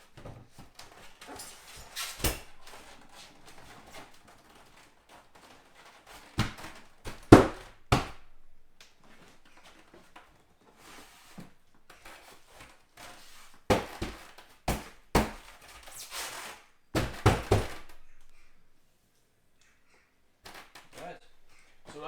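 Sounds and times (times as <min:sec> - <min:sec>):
board knocking into window frame: 0:06.4 - 0:08.3, 0:13.7 - 0:15.5, 0:17.0 - 0:18.0
board scraping against frame: 0:09.0 - 0:18.4.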